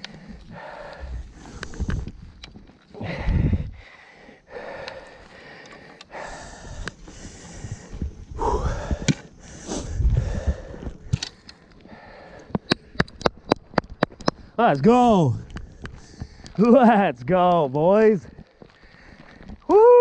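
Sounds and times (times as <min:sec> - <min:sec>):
man breathing hard and gasping: 0:00.0 - 0:02.2, 0:02.9 - 0:13.2, 0:18.6 - 0:19.6
sharp clicks: 0:11.0 - 0:14.6.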